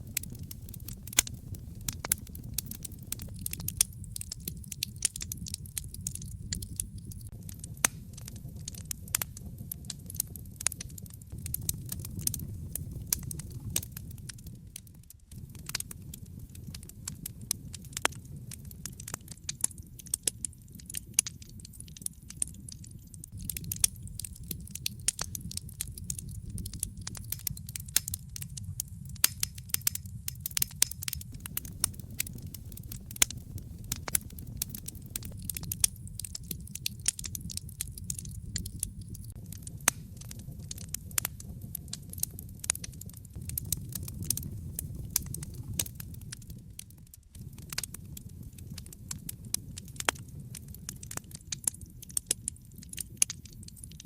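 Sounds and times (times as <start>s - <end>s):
low rumble of flame: 0.0s - 54.0s
wood fire crackling and popping: 0.0s - 54.0s.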